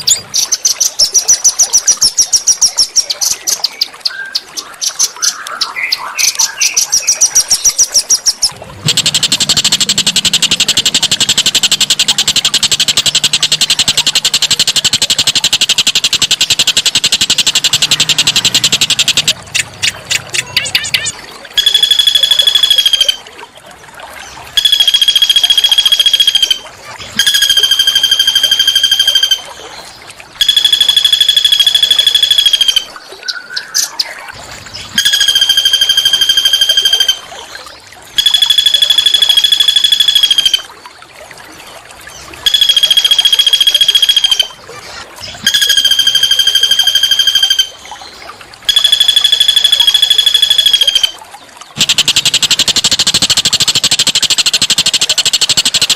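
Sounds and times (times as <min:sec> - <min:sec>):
songbird buzzy trill: 0:06.2 - 0:23.2, 0:24.5 - 0:26.6, 0:27.2 - 0:29.5, 0:30.4 - 0:32.9, 0:34.8 - 0:37.3, 0:38.1 - 0:40.7, 0:42.4 - 0:44.6, 0:45.3 - 0:47.9, 0:48.7 - 0:51.2, 0:51.8 - 0:55.9.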